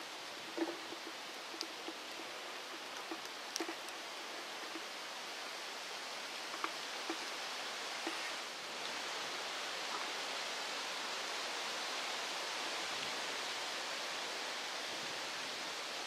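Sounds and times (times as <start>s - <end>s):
outdoor background hiss: 0.0s - 16.0s
small ticks: 0.6s - 4.0s.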